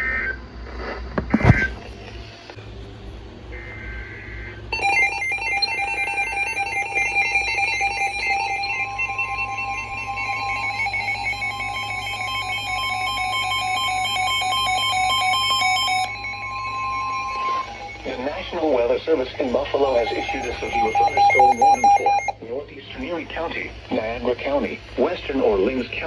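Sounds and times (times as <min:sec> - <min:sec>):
steady warning tone: 0:01.4 - 0:26.0
warbling data tones: 0:03.5 - 0:22.4
electronic alarm trilling: 0:03.6 - 0:22.4.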